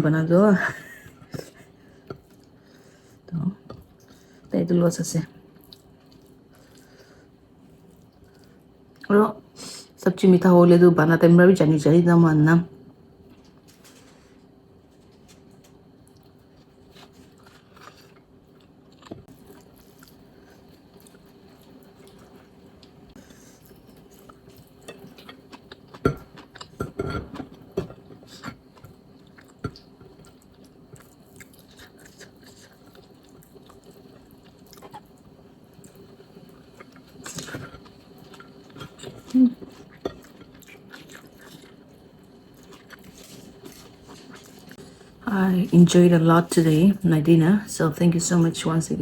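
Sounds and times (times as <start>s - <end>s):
person chewing food: 16.0s - 45.1s.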